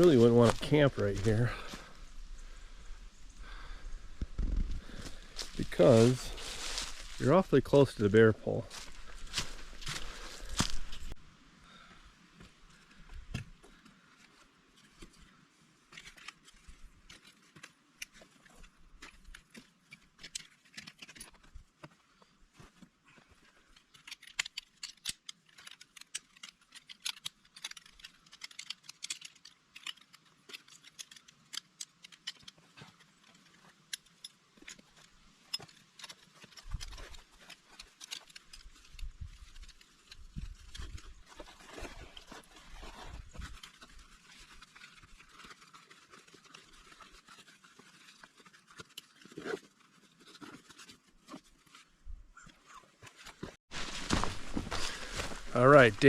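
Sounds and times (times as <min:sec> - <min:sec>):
footsteps crunching dry leaves: 0:00.0 - 0:02.0, 0:04.8 - 0:11.2, 0:53.4 - 0:56.0.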